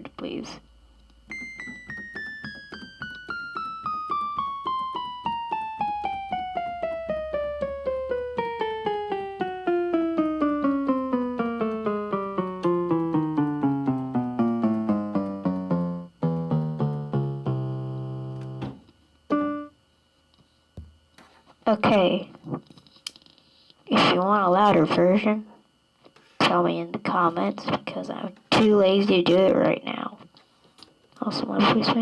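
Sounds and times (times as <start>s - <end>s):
keyboard falling note run: 1.3s - 19.7s.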